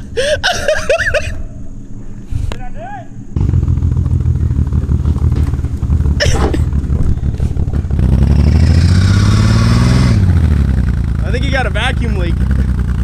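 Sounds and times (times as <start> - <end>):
engine hiss: 1.9 - 13.0
car engine revving: 3.3 - 13.0.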